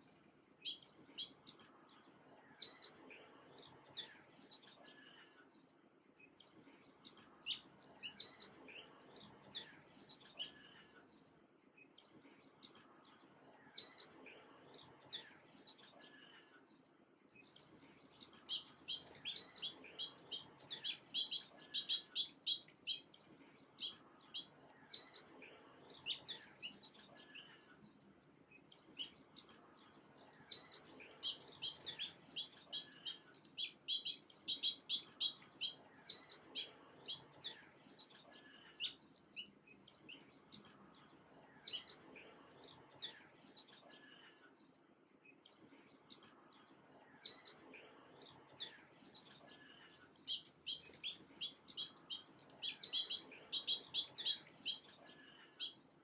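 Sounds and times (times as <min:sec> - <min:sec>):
small songbirds chirping: 0:00.0 - 0:56.0.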